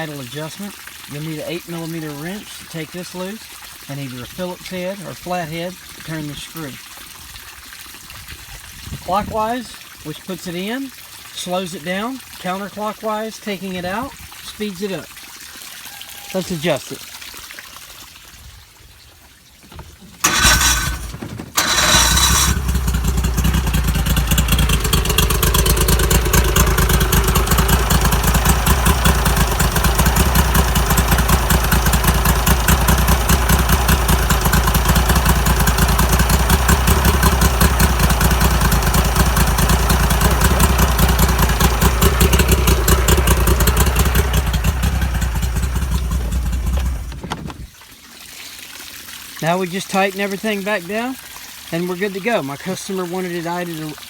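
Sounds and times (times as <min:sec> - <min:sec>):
outboard engine starting and idling: 0:19.7 - 0:47.8.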